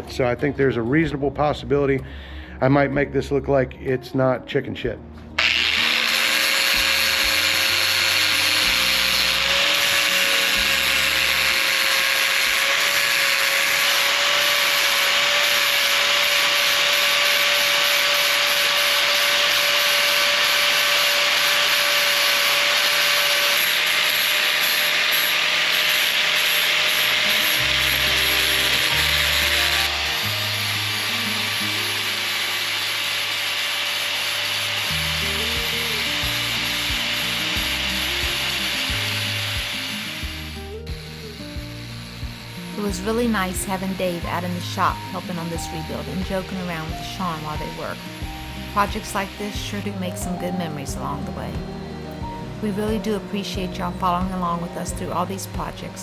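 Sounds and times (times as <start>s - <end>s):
belt sander on steel tube: 5.4s - 56.0s.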